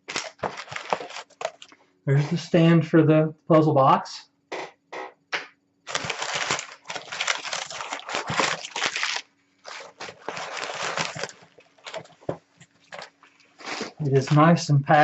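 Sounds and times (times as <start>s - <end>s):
bubble wrap crinkling: 0.0s - 1.8s, 5.9s - 14.4s.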